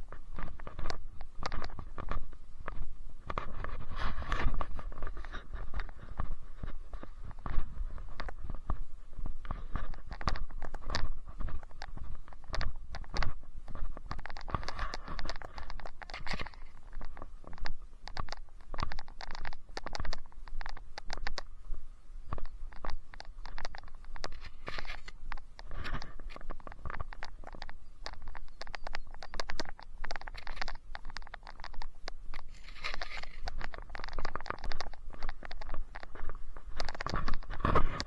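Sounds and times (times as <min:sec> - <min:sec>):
footsteps crunching on trail: 0:00.0 - 0:38.0
camera handling noise: 0:14.1 - 0:16.8, 0:22.4 - 0:38.0.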